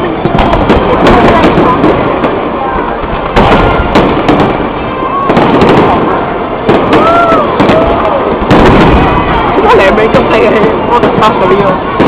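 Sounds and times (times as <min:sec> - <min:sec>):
fireworks bangs and crackles: 0:00.0 - 0:12.0
people exclaiming: 0:06.8 - 0:09.4.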